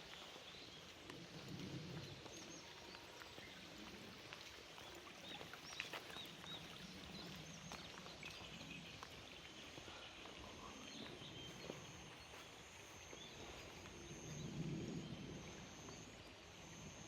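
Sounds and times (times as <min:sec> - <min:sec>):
low steady background noise: 0:00.0 - 0:17.0
birds singing: 0:04.8 - 0:15.2.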